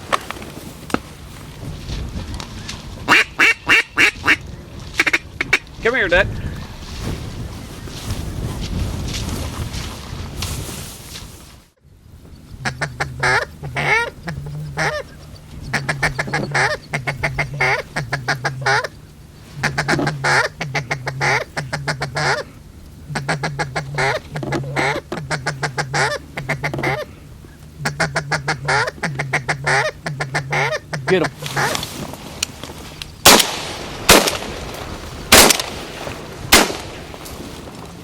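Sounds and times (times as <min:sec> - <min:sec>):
wind noise: 0:00.0 - 0:18.8
goose honking: 0:03.1 - 0:04.4, 0:05.0 - 0:05.7, 0:12.6 - 0:27.2, 0:27.8 - 0:31.8.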